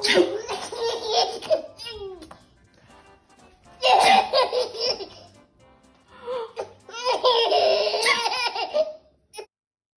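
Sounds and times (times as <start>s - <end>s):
baby laughing: 0.0s - 2.4s, 3.8s - 5.3s, 6.5s - 9.5s.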